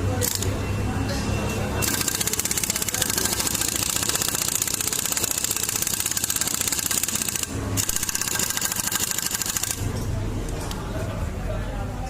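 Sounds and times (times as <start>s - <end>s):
impact wrench rattling: 1.8s - 9.9s.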